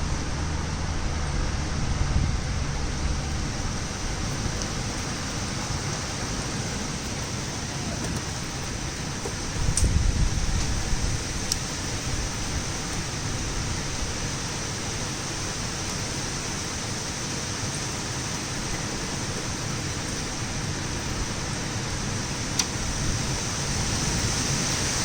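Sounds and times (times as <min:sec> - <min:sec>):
torrential rain pouring: 0:00.0 - 0:25.0
sharp tick: 0:09.7 - 0:09.9.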